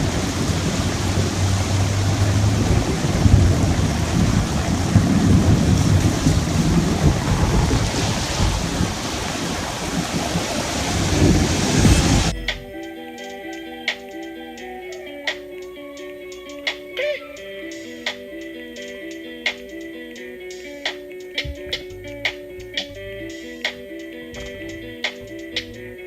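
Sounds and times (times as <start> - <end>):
heavy rain hissing: 0.0 - 12.6
thunder rumbling: 0.0 - 12.7.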